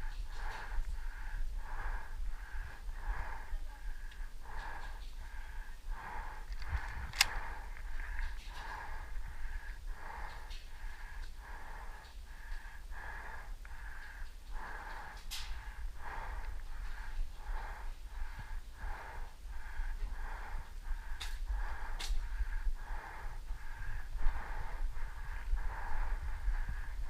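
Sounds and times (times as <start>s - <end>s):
heavy wheezy breathing: 0.0s - 27.0s
sharp clicks: 6.4s - 8.6s.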